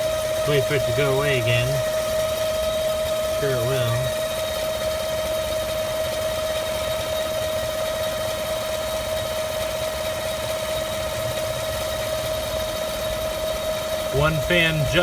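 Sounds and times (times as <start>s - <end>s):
steady high whine: 0.0s - 4.2s, 10.5s - 15.0s
car engine idling: 0.0s - 4.6s, 8.4s - 15.0s.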